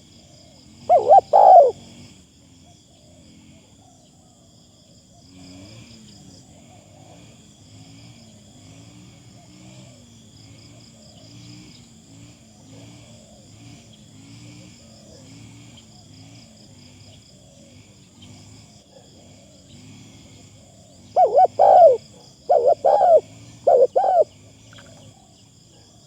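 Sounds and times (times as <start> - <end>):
insects trilling: 0.0 - 3.4, 4.0 - 26.0
doves cooing: 0.9 - 1.8, 21.2 - 25.1.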